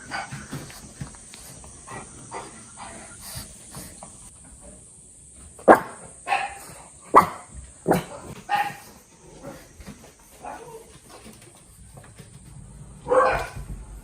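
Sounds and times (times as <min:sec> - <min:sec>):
dog barking: 0:05.6 - 0:08.9, 0:13.0 - 0:13.7.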